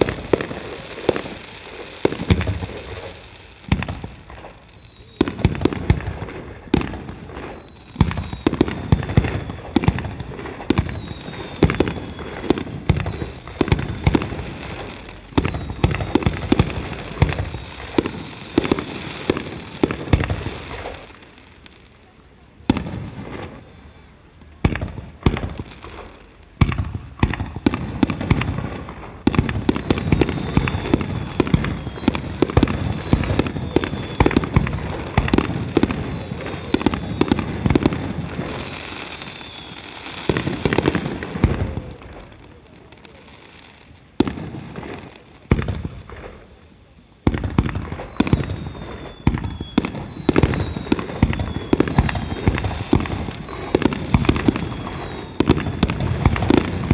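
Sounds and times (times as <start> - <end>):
firework shells bursting: 0.0 - 21.4
falling firework whistles: 0.0 - 56.9
firework crackling: 0.0 - 56.9.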